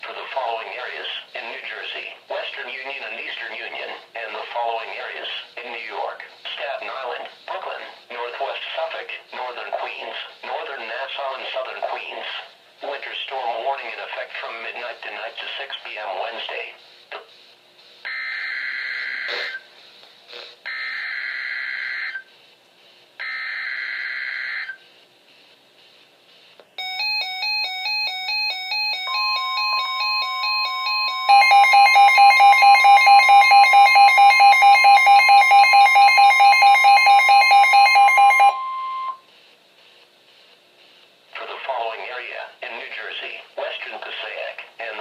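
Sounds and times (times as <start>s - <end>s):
rapid alarm beeping: 18.1s - 19.7s, 20.7s - 22.3s, 23.2s - 24.8s, 26.8s - 39.3s
steady warning alert tone: 26.8s - 39.2s.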